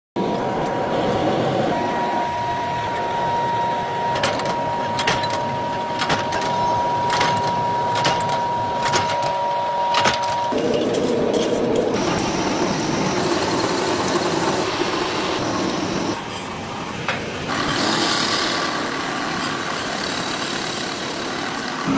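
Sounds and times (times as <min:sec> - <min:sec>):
high steady whine: 0:00.2 - 0:16.9
workshop machine running: 0:00.2 - 0:21.9.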